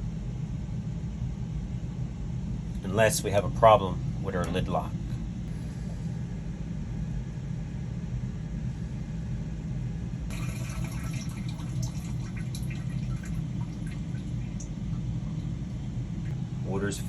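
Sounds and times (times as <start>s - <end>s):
washing machine humming: 0.0s - 17.0s
water splashing and trickling: 10.3s - 16.3s.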